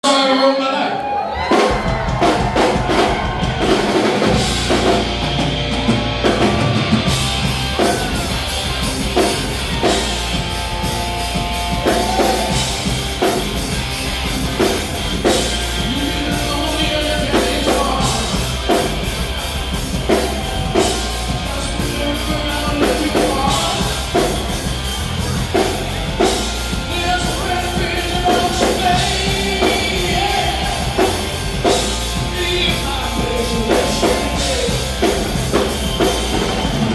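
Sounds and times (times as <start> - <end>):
live rock band playing: 1.0 - 36.9
electric guitar: 1.1 - 36.9.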